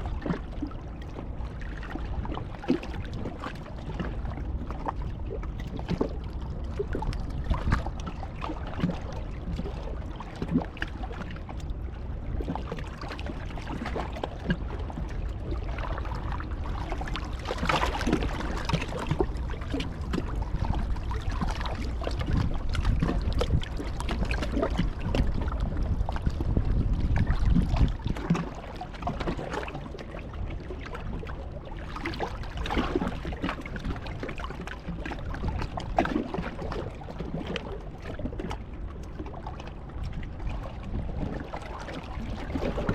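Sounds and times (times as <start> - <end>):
wind buffeting the microphone: 0.0 - 42.9.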